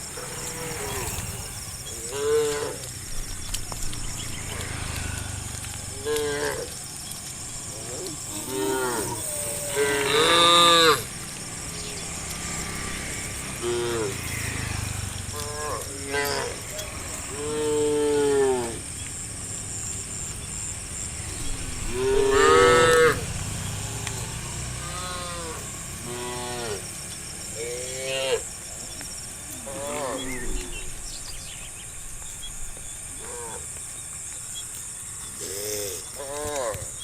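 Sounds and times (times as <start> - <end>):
cows mooing: 0.0 - 3.0, 4.4 - 6.8, 7.8 - 11.2, 12.4 - 19.0, 20.5 - 28.5, 29.5 - 31.1, 33.2 - 33.8, 35.4 - 37.0.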